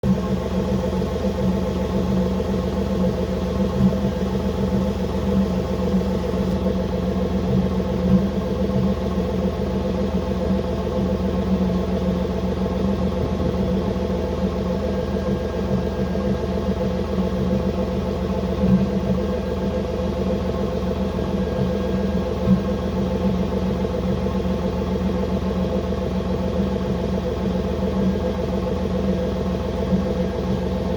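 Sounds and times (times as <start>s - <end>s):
car engine idling: 0.0s - 30.9s.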